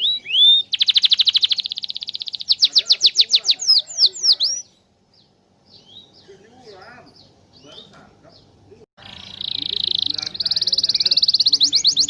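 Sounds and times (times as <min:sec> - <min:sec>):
canary singing: 0:00.0 - 0:12.0.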